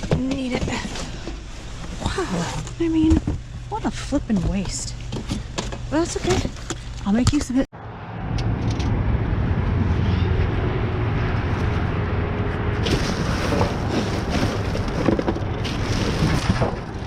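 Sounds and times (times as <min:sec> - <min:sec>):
rustles and knocks: 0:12.8 - 0:17.0.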